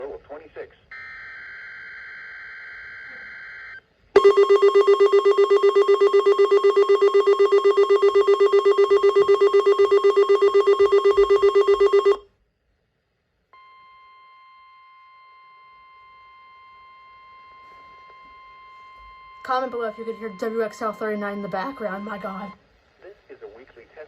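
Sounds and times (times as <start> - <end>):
faint steady warning alarm tone: 0.9 - 12.3, 13.6 - 22.6
pulsing trilling alarm beep: 1.5 - 12.2, 15.4 - 22.6
high-pitched data tone: 3.0 - 12.2, 17.6 - 22.6.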